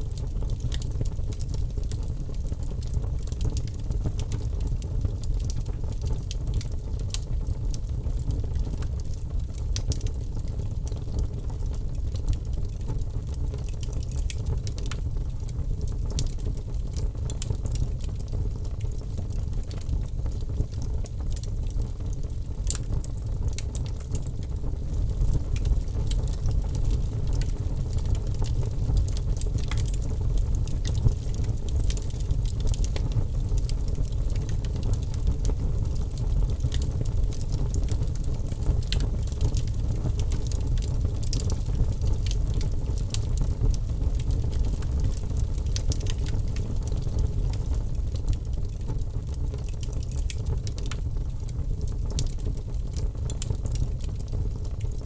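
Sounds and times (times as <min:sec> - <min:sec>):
wood fire crackling: 0:00.1 - 0:55.0.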